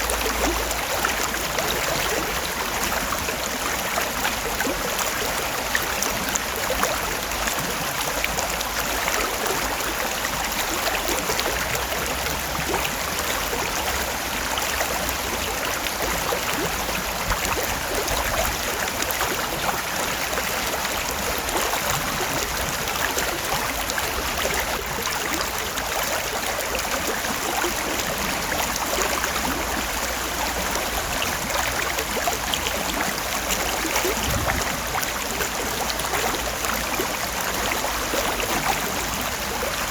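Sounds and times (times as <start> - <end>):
creek water rushing over rocks: 0.0 - 39.9.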